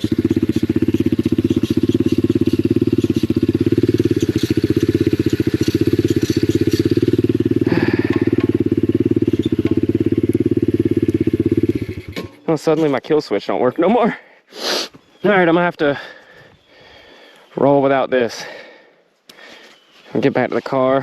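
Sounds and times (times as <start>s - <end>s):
motorbike engine idling: 0.0s - 13.0s.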